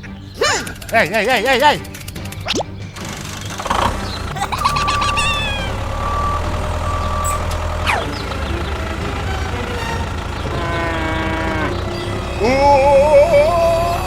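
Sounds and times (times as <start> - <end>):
small motor humming: 3.0 - 14.0
short beeps: 4.4 - 8.0
falling whistle: 4.4 - 14.0
slowly falling tone: 4.4 - 14.0.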